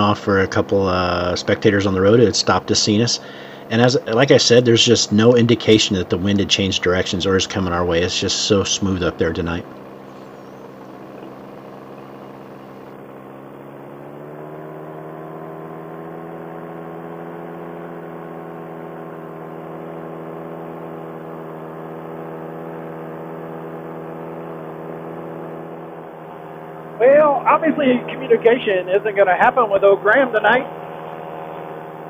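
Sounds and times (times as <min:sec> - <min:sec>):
paramotor engine and propeller droning: 0:00.0 - 0:32.0.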